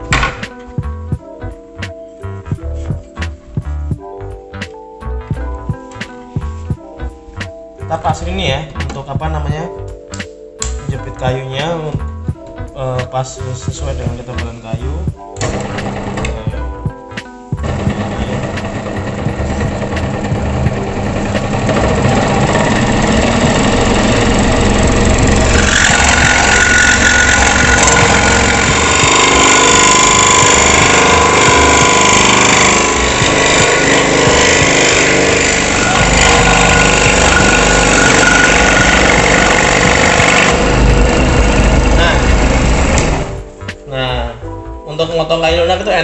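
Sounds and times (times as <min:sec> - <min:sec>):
saw blade cutting wood: 0:15.4 - 0:16.4, 0:17.6 - 0:43.4
scroll saw motor humming: 0:15.4 - 0:16.4, 0:17.6 - 0:43.4.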